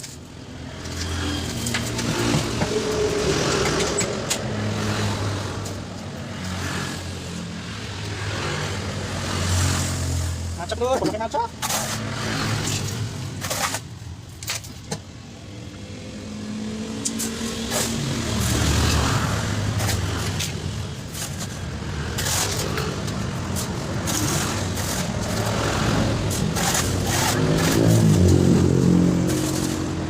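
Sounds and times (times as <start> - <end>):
vehicle engine revving: 21.7 - 30.0.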